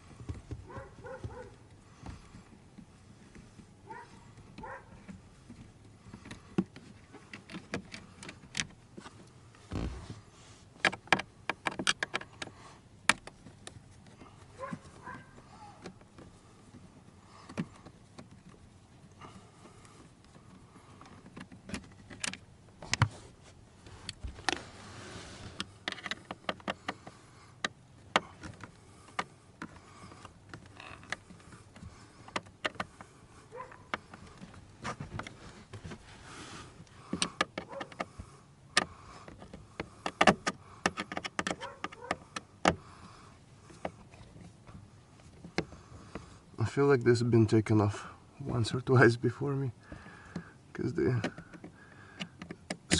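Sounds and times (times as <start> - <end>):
short scraping rustle: 9.0 - 10.8, 22.9 - 26.3, 33.0 - 36.9.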